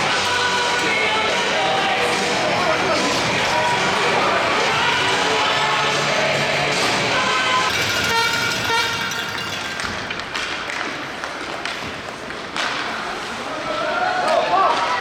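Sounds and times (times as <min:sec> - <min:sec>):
arena crowd noise: 0:00.0 - 0:15.0.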